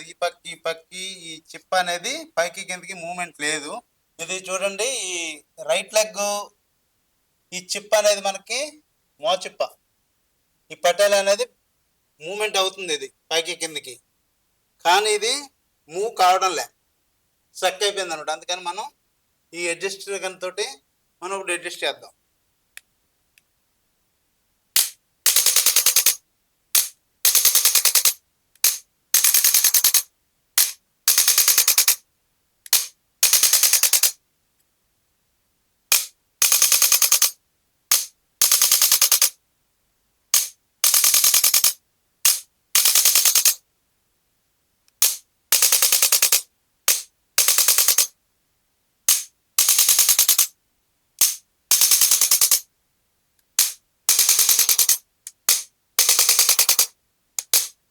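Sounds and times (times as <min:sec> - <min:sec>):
adjuster gun tapping: 0:24.8 - 0:26.2, 0:26.8 - 0:30.0, 0:30.6 - 0:32.0, 0:32.7 - 0:34.1, 0:35.9 - 0:37.3, 0:53.6 - 0:57.8.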